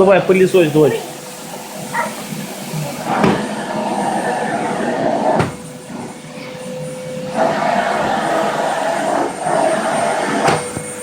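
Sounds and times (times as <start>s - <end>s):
vacuum cleaner whining: 0.0s - 11.0s
knock: 5.4s - 5.6s.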